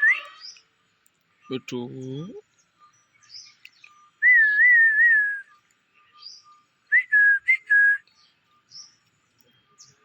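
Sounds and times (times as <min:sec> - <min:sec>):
person whistling: 0:04.2 - 0:05.5, 0:06.9 - 0:08.1.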